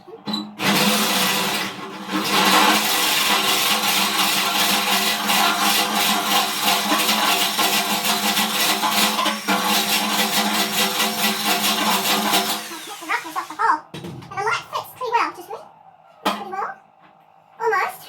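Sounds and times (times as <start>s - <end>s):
electric drill cutting steel: 0.6s - 13.7s.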